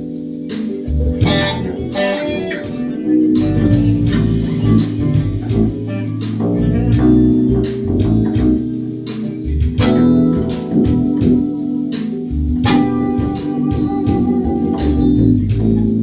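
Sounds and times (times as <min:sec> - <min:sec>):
electric bass guitar plucked notes: 0:00.0 - 0:16.0
other stringed instruments playing: 0:01.2 - 0:08.3, 0:12.6 - 0:16.0.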